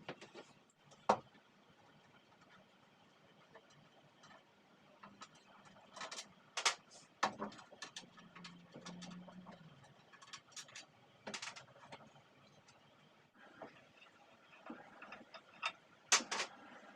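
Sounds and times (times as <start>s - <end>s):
clicks and knocks of hard objects: 3.6s - 12.8s, 14.6s - 16.6s.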